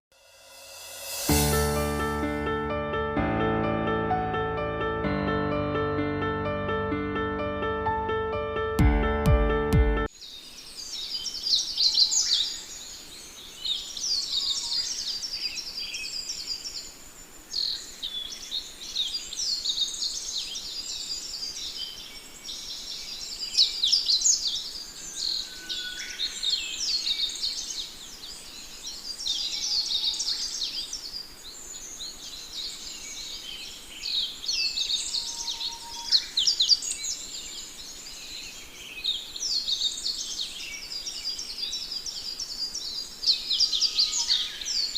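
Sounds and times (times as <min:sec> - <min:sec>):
sparrows chirping: 0:10.2 - 0:44.9.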